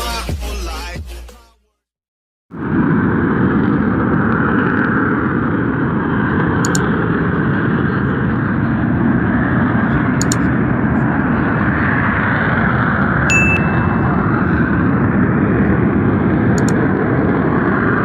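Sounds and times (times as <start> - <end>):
loud rumbling volcano: 2.5 - 18.0
faint clicks: 6.6 - 6.9, 16.6 - 16.8.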